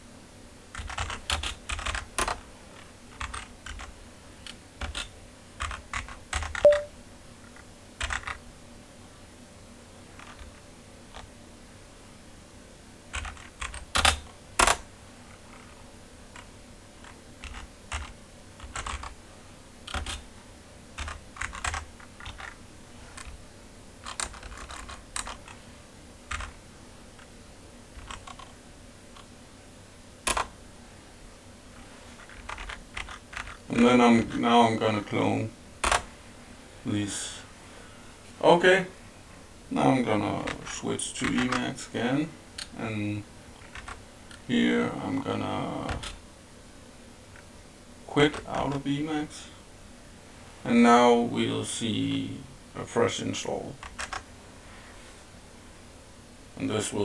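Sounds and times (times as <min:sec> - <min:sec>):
computer keyboard typing: 0:00.7 - 0:06.9, 0:07.5 - 0:08.4, 0:10.2 - 0:11.3, 0:13.1 - 0:14.8, 0:15.5 - 0:19.2, 0:19.8 - 0:20.3, 0:21.0 - 0:22.6, 0:23.2 - 0:23.4, 0:24.0 - 0:25.7, 0:26.3 - 0:26.6, 0:28.0 - 0:29.3, 0:30.2 - 0:30.5, 0:32.1 - 0:33.8, 0:40.4 - 0:41.7, 0:43.6 - 0:44.0, 0:53.8 - 0:54.3.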